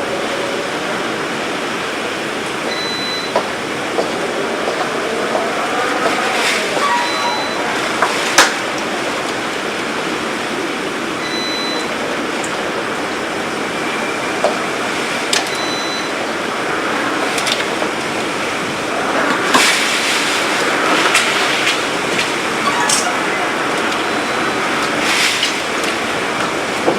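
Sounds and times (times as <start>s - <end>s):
heavy rain: 0.0s - 26.9s
storm wind: 0.0s - 26.9s.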